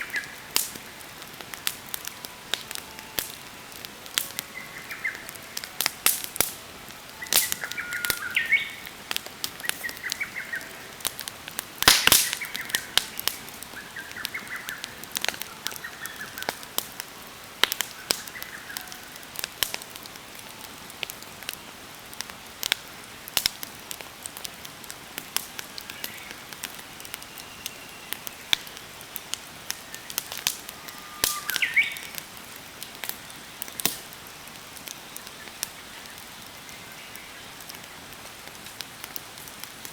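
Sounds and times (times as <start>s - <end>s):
birds chirping: 0.0s - 16.7s, 25.6s - 32.2s
campfire crackling and popping: 0.0s - 39.9s.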